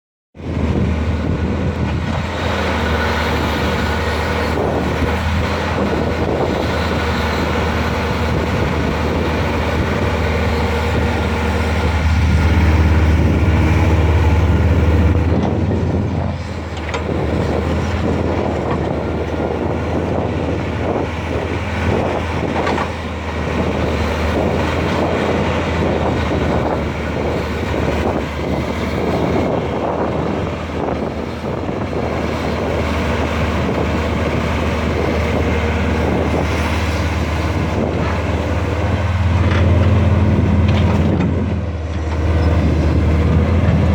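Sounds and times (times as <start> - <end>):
excavator diesel engine humming: 0.4 - 43.9.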